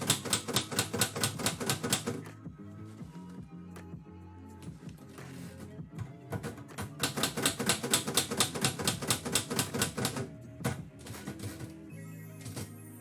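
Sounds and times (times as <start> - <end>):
typewriter keys striking: 0.0 - 2.2, 6.3 - 11.7
lo-fi background music: 0.0 - 13.0.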